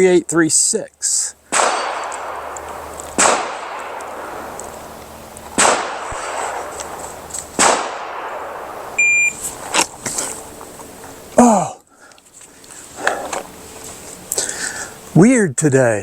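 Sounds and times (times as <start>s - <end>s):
pistol shots echoing: 1.5s - 9.0s
shot timer beep: 9.0s - 9.4s.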